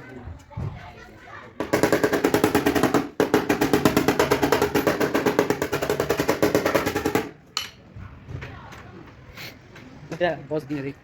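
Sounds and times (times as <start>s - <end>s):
power hammer on sheet metal: 1.6s - 7.4s.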